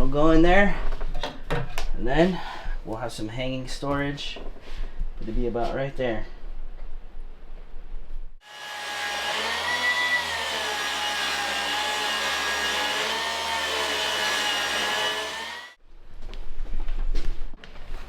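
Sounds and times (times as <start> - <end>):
electric motor whining: 8.4 - 15.8.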